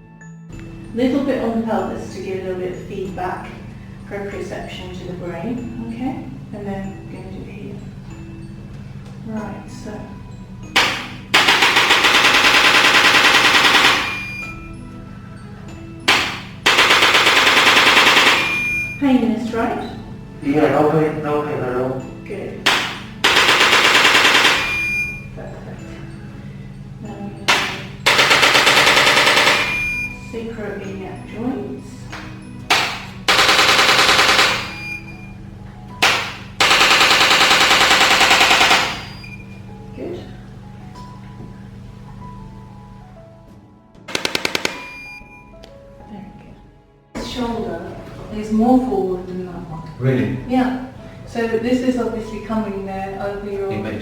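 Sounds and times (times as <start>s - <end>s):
soft background music: 0.0s - 54.0s
rapid mechanical taps: 10.8s - 14.2s, 16.1s - 18.6s, 22.7s - 24.7s, 27.5s - 29.8s, 32.2s - 34.8s, 36.0s - 39.2s, 44.1s - 44.9s.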